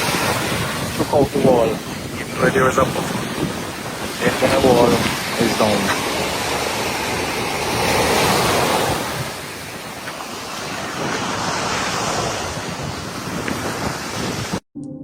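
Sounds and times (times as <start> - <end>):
sea surf washing onto shore: 0.0 - 14.6
wind buffeting microphone: 0.0 - 14.6.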